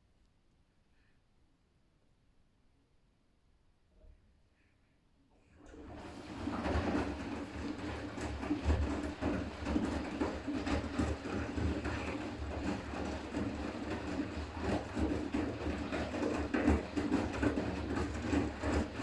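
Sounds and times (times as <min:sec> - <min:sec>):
laundry and water sloshing: 0:05.5 - 0:19.0
washing machine motor hum: 0:05.5 - 0:19.0.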